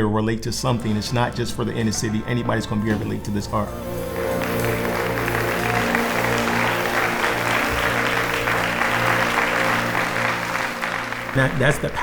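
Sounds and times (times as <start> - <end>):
audience applauding: 0.4 - 12.0
sustained musical chord: 0.6 - 12.0.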